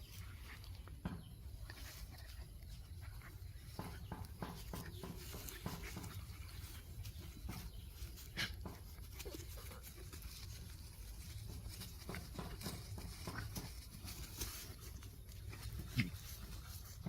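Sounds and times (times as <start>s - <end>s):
dogs playing with scuffles: 3.2s - 17.0s.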